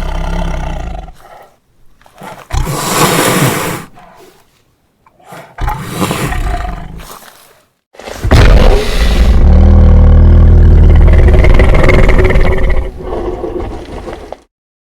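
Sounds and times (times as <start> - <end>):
tiger roaring: 8.3 - 13.6.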